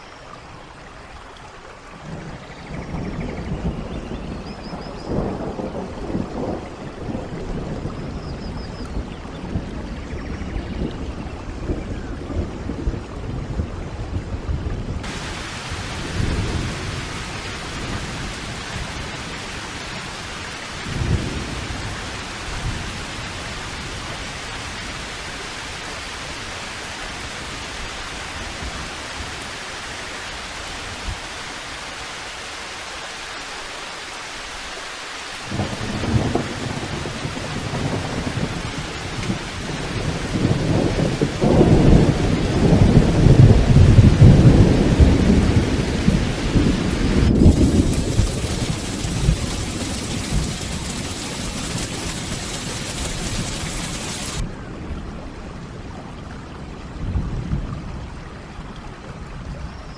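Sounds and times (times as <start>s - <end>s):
steady rain: 0.0s - 10.3s, 15.0s - 54.5s
rolling thunder: 15.0s - 32.0s, 35.5s - 54.4s.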